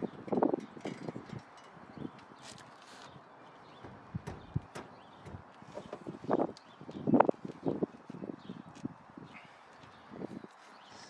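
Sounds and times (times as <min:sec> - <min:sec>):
hand tools and metal parts clunking: 0:00.0 - 0:06.6.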